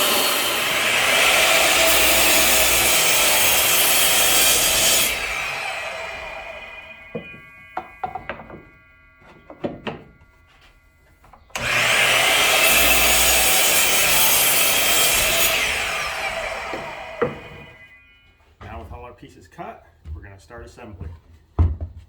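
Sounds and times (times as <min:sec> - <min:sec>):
power saw cutting wood: 0:00.0 - 0:18.2
boards knocking: 0:07.1 - 0:10.2.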